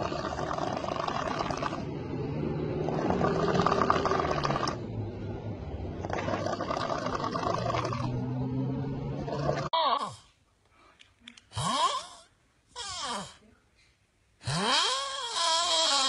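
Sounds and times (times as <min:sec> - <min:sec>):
person snoring heavily: 0:00.0 - 0:04.8, 0:06.0 - 0:08.2, 0:11.6 - 0:12.2, 0:14.4 - 0:16.0.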